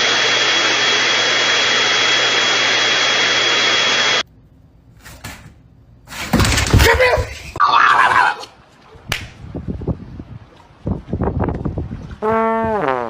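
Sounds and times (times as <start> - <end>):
machine rushing with high whine: 0.0 - 4.2.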